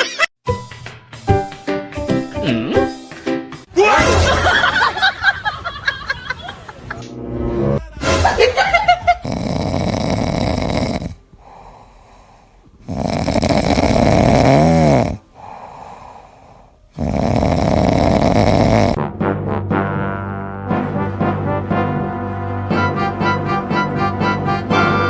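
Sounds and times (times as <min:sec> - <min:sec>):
pet snoring: 0:09.2 - 0:16.3, 0:16.9 - 0:19.0
quiet breaths: 0:11.1 - 0:13.4, 0:15.2 - 0:17.0.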